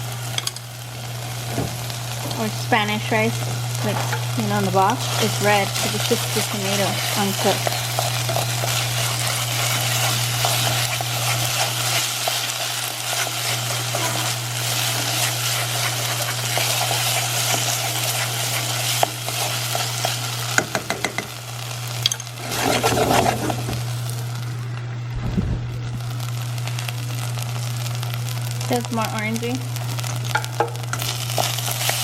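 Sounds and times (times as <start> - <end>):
rice and sauce sizzling in a pan: 0.0 - 24.6, 26.0 - 32.0
spoon stirring: 6.7 - 20.2
spoon tapping on pan: 20.6 - 21.3.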